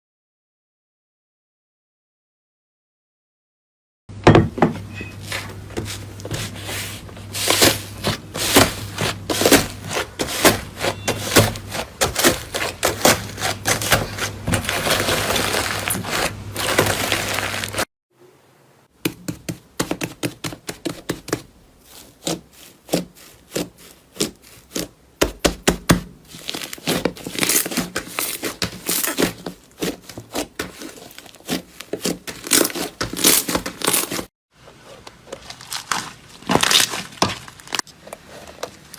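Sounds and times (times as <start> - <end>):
crunchy material crackling: 5.2 - 17.9, 26.2 - 38.9.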